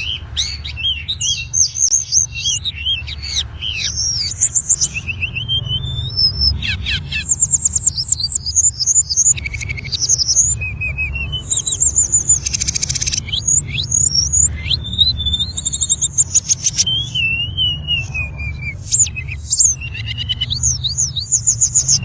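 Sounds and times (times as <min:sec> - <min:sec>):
bird singing whistled notes: 0:00.0 - 0:22.0.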